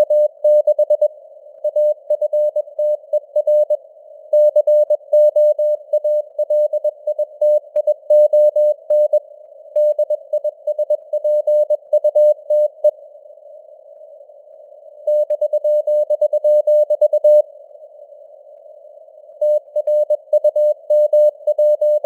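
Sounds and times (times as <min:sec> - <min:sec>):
morse code beeps: 0:01.7 - 0:03.8, 0:04.4 - 0:09.2, 0:15.1 - 0:17.4, 0:19.4 - 0:22.0.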